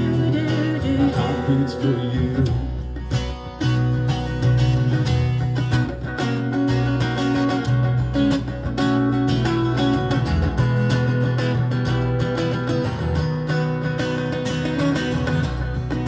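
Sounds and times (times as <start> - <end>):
baritone guitar strumming chords: 0.0 - 16.0
sustained low bass notes: 0.0 - 16.0.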